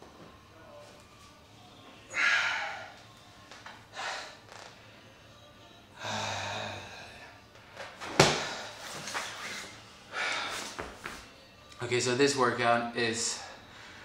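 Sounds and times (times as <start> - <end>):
person breathing hard: 2.1 - 3.0, 3.9 - 4.4, 10.0 - 10.9.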